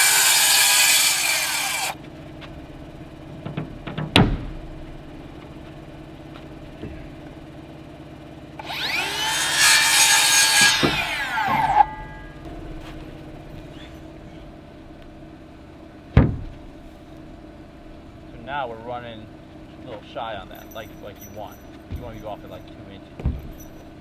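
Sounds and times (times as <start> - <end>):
power saw cutting wood: 0.0 - 2.0, 8.6 - 12.9.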